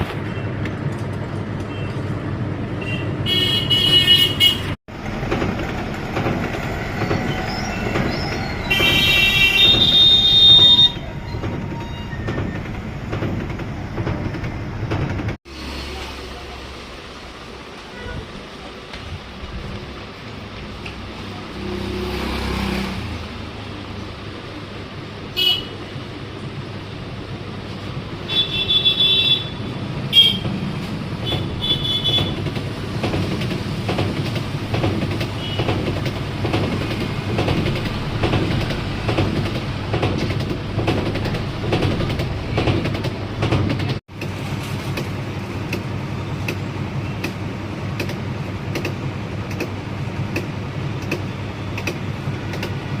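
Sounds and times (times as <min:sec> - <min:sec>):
washing machine clatter: 0:04.9 - 0:10.0, 0:30.4 - 0:45.3.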